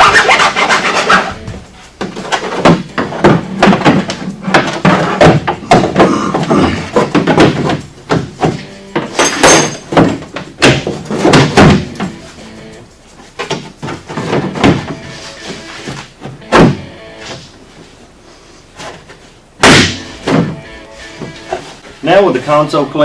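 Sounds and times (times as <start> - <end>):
hand file rasping: 0.0 - 1.5.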